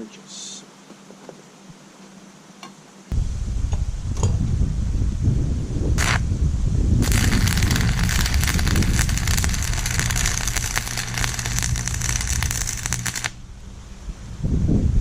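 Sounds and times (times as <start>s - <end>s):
welding arc crackling: 6.0s - 6.2s, 7.0s - 13.4s.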